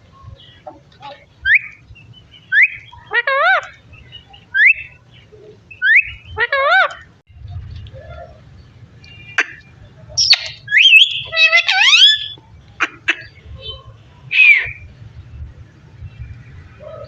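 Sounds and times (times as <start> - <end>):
parrot squawk: 2.5 - 3.7, 10.2 - 13.3, 14.3 - 14.8
parrot whistling: 5.8 - 6.2, 10.2 - 12.4.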